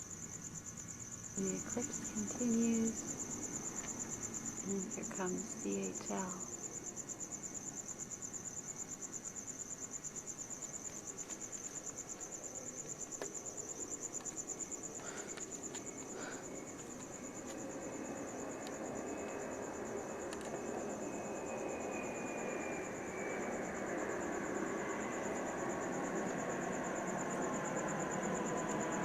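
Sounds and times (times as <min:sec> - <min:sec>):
crickets chirping: 0:00.0 - 0:29.0
jet rumble overhead: 0:14.5 - 0:29.0.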